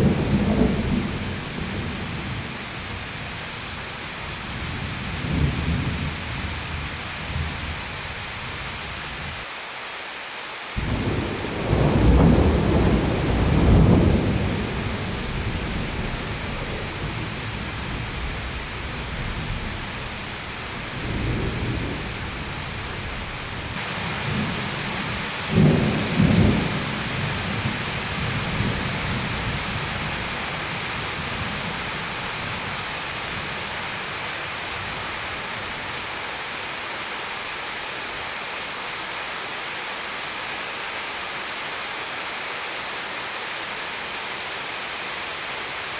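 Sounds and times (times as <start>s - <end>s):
rolling thunder: 0.0s - 3.4s, 4.5s - 7.8s, 10.8s - 33.7s
heavy rain: 0.0s - 45.9s.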